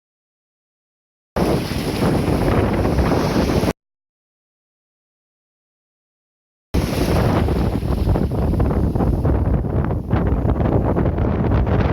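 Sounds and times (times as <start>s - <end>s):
sea waves on sandy beach: 1.4s - 3.7s, 6.8s - 10.8s
wind buffeting microphone: 1.4s - 3.7s, 6.8s - 11.9s.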